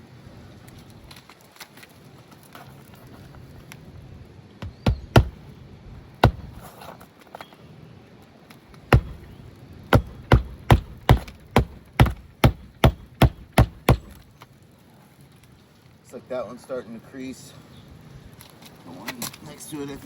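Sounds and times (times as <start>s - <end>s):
hammer striking nails: 4.6s - 5.4s, 6.2s - 6.7s, 8.9s - 14.2s.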